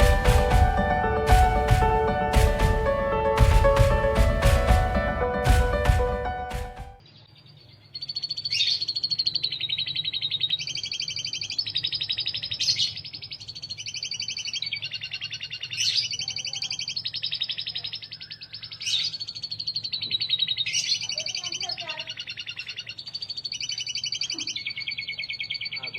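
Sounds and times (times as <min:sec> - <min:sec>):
canary singing trills: 0:07.0 - 0:25.9.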